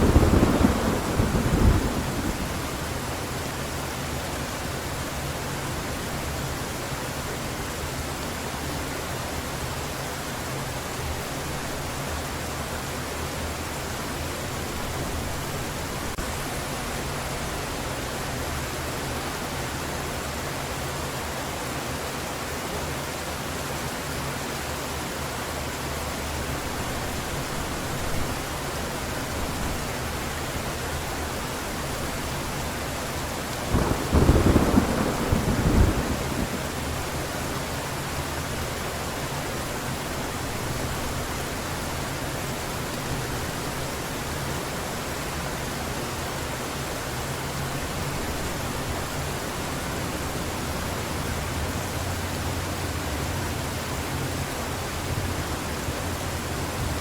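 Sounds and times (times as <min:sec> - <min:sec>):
thunderclap rumbling: 0:00.0 - 0:03.2, 0:33.6 - 0:37.4
heavy rain: 0:00.0 - 0:57.0.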